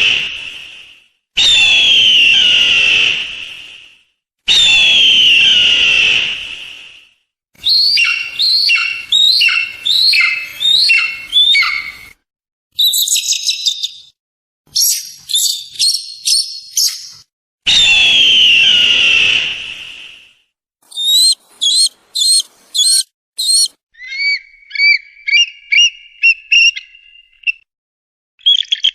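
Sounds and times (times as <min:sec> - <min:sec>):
eagle screaming: 0:01.4 - 0:03.1, 0:04.5 - 0:06.2, 0:07.6 - 0:12.1, 0:17.7 - 0:19.4, 0:20.9 - 0:25.4
eagle high-pitched chatter: 0:07.6 - 0:12.1, 0:20.9 - 0:23.7
eagle whistled calls: 0:07.6 - 0:12.2, 0:12.8 - 0:14.1, 0:14.7 - 0:20.0, 0:20.9 - 0:27.6
short high chirps: 0:20.9 - 0:23.7.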